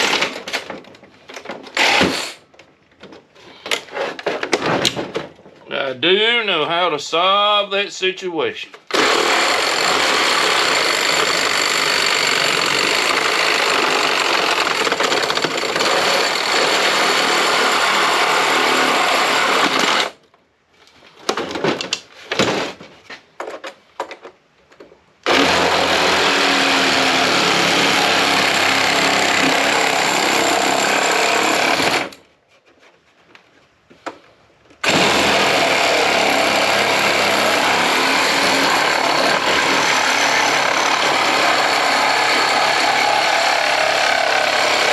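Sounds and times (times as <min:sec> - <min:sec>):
power tool running: 0:08.9 - 0:20.2, 0:25.3 - 0:32.2, 0:34.8 - 0:44.9.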